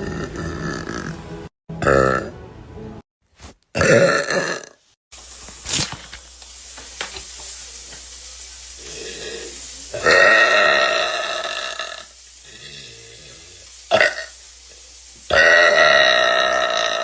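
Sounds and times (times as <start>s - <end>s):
woman burping loudly: 0.0s - 1.2s, 1.8s - 2.3s, 3.7s - 4.8s, 10.0s - 12.1s, 13.9s - 14.3s, 15.3s - 17.0s.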